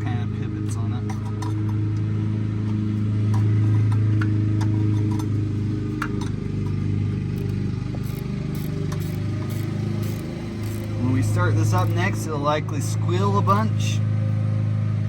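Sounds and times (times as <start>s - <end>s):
low machine drone: 0.0s - 15.0s
wrenches clicking on bolts: 7.4s - 12.1s.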